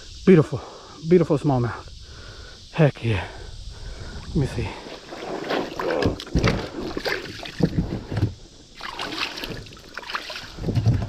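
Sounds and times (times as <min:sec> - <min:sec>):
gear knocking and rustling in kayak: 0:04.9 - 0:11.0.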